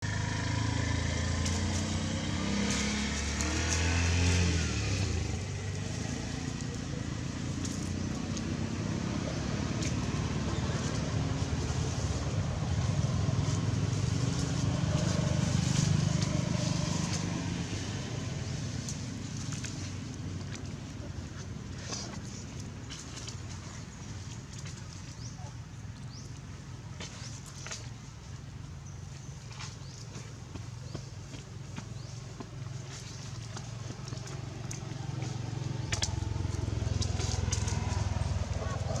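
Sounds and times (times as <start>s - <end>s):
passing motor vehicles: 0.0s - 39.0s.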